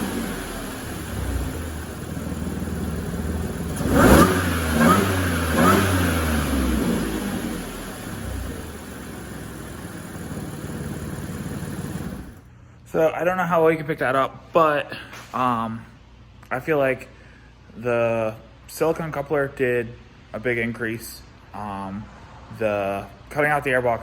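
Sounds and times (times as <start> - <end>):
car engine revving: 0.0 - 12.4
car engine idling: 0.0 - 12.5.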